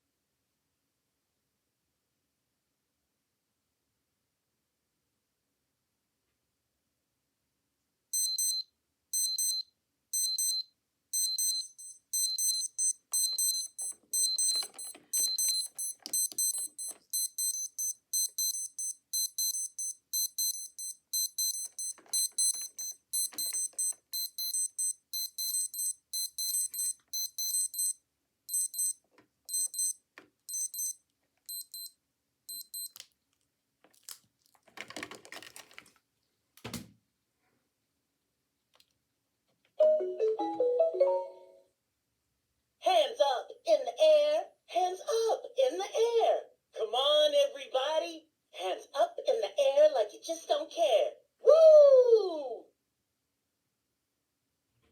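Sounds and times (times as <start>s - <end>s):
digital watch alarms beeping: 8.2s - 33.0s.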